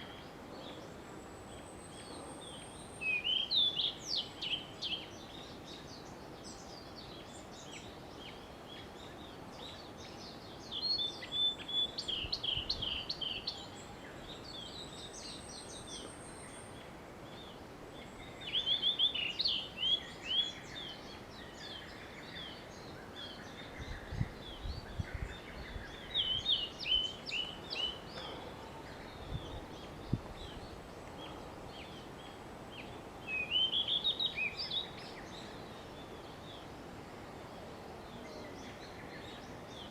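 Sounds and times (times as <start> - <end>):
bird singing whistled notes: 1.5 - 36.7.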